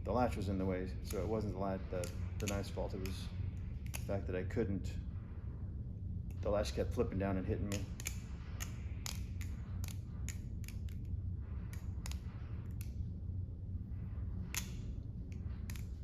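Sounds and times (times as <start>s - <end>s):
balisong knife clicking and clacking: 1.0s - 1.4s, 2.0s - 3.2s, 3.8s - 4.1s, 7.7s - 11.1s, 11.7s - 13.0s, 14.5s - 16.0s.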